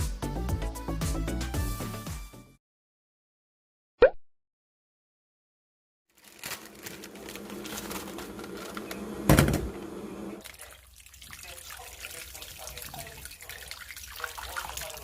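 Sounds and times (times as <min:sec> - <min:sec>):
tap water running into sink: 0:08.7 - 0:15.0.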